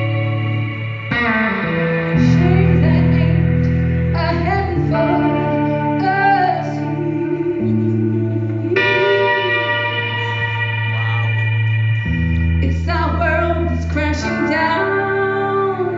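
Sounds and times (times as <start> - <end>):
woman singing: 0.0 - 10.2, 12.6 - 15.9
guitar chords: 0.0 - 15.9.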